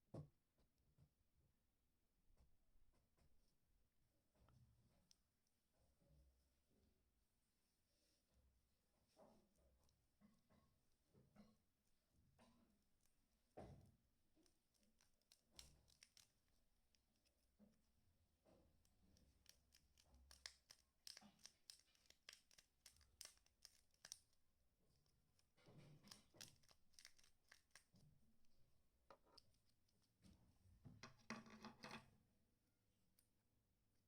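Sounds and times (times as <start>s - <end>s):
faint clicks and taps: 12.4s - 32.0s.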